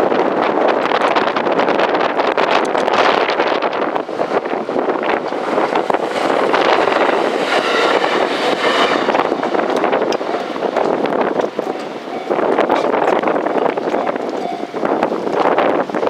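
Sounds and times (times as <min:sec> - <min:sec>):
train wheels rumbling on rails: 0:00.0 - 0:16.0
wind buffeting microphone: 0:00.0 - 0:16.0
steady higher tones: 0:04.2 - 0:15.3.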